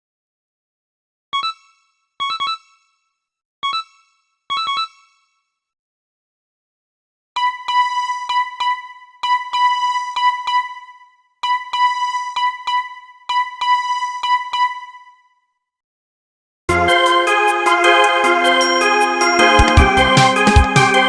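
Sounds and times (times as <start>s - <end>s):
synthesised ringtone notes: 7.4s - 15.2s, 16.7s - 21.0s.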